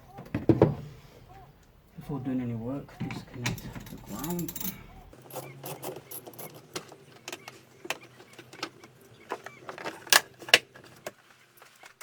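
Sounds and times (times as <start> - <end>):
hand tools clicking on metal: 3.0 - 11.2.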